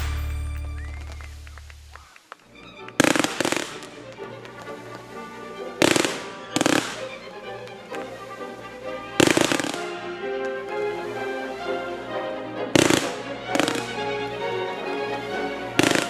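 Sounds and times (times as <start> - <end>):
fireworks bangs: 0.0 - 2.3, 3.0 - 4.8, 5.8 - 7.4, 9.0 - 11.4, 12.7 - 14.5, 15.2 - 16.0
music: 0.0 - 16.0.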